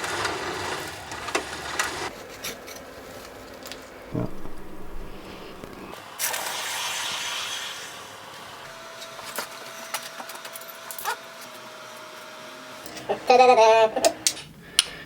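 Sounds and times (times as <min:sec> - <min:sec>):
hot steel hissing in water: 0:06.0 - 0:08.6.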